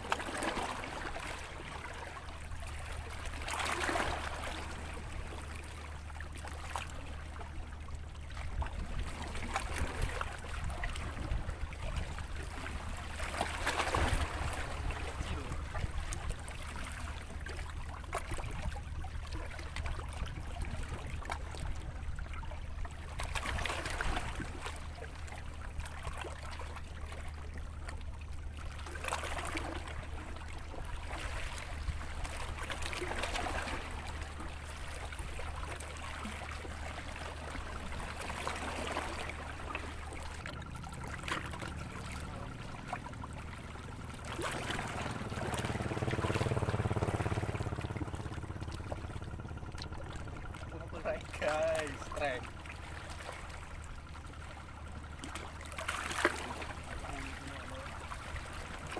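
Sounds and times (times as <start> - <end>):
water lapping and trickling: 0.0 - 58.9
low hum: 23.9 - 58.9.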